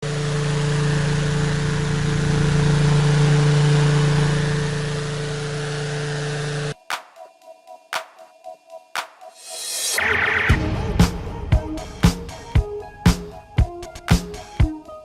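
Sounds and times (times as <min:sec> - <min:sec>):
engine running with low hum: 0:00.0 - 0:06.8.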